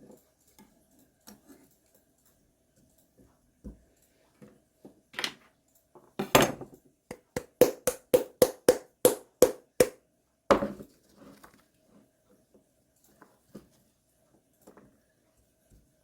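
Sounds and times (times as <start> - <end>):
utensil knocking hard surface: 6.2 - 10.8.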